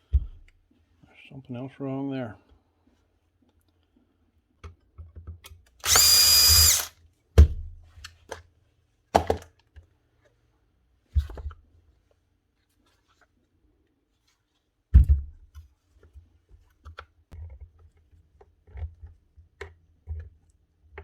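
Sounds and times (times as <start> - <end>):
cordless drill running: 5.8 - 6.9.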